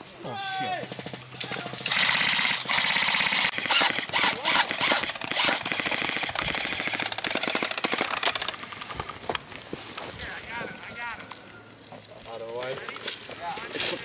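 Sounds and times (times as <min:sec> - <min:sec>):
airsoft guns firing bursts: 0:00.8 - 0:08.8.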